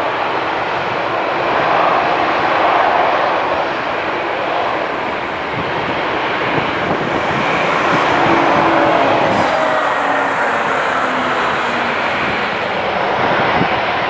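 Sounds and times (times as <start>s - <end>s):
airliner engines running: 0.0s - 14.0s
thin high whine: 3.9s - 14.0s.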